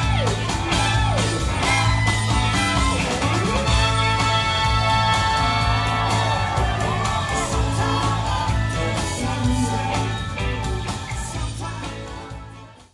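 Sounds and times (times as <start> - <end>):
rock music with singing: 0.0 - 12.9.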